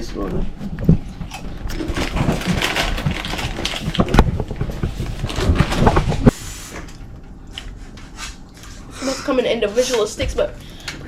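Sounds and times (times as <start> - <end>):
plastic packaging crinkling: 1.6 - 6.3.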